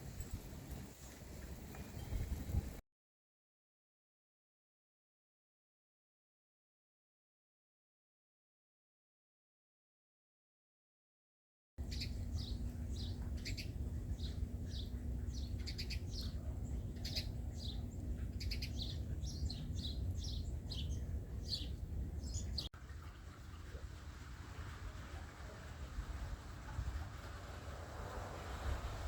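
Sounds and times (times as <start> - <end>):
birds chirping: 11.8 - 23.8
low rumble: 11.8 - 29.0.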